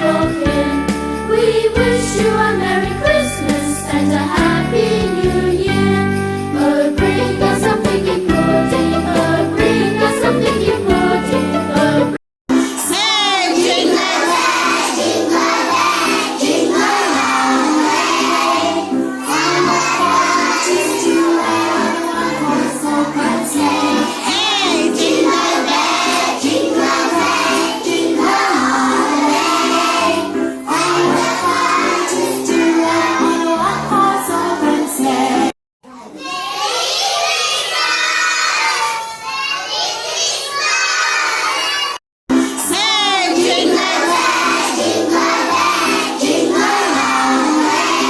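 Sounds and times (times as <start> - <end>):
children singing: 0.0 - 12.2, 12.8 - 35.6, 36.2 - 42.0, 42.7 - 48.0
recorded backing music: 0.0 - 14.8
hubbub of children's voices: 35.8 - 42.0.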